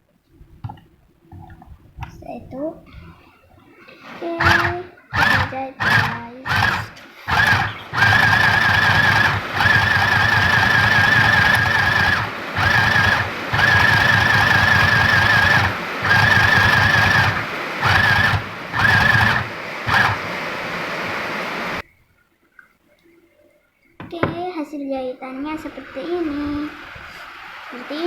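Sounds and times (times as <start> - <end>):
sewing machine motor whine: 3.7 - 21.8, 25.6 - 28.0.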